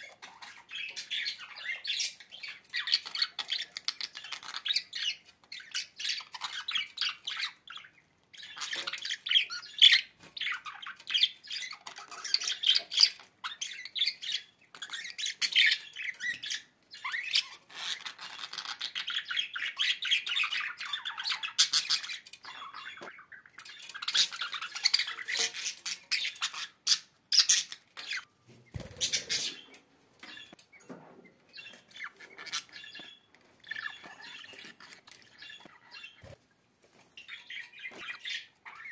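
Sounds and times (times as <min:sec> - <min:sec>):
bird squawking and chattering: 0:08.4 - 0:30.6.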